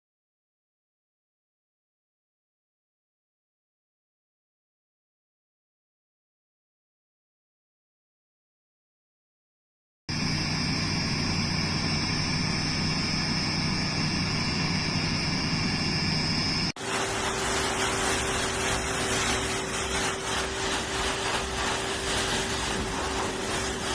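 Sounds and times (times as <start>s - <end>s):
blow dryer motor whine: 10.1s - 23.9s
rushing blast of air: 16.8s - 23.9s.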